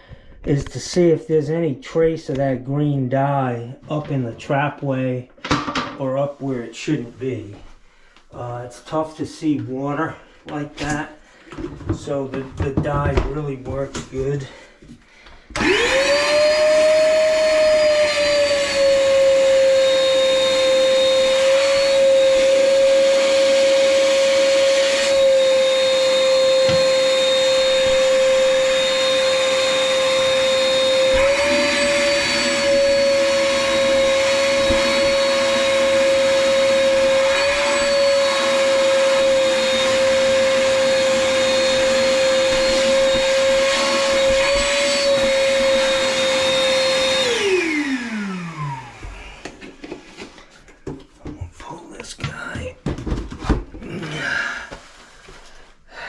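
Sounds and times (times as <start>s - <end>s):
shop vacuum running with whine: 15.6s - 49.5s.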